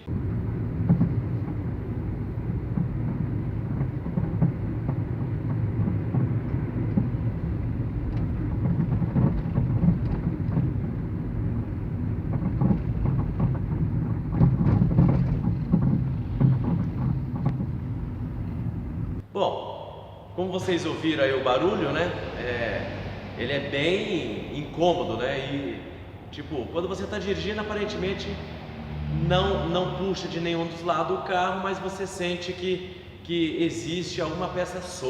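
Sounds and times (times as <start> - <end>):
suspension knocking: 0.0 - 19.2
road and engine rumble: 0.0 - 19.4, 20.3 - 35.0.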